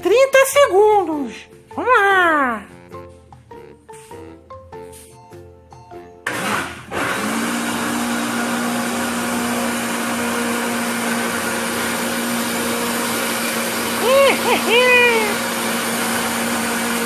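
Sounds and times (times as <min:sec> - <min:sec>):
blender motor humming: 0:06.2 - 0:17.0.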